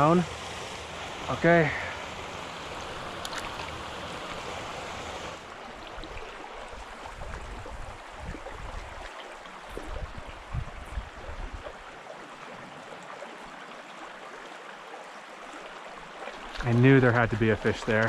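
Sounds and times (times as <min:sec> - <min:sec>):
mountain stream flowing: 0:00.0 - 0:18.0.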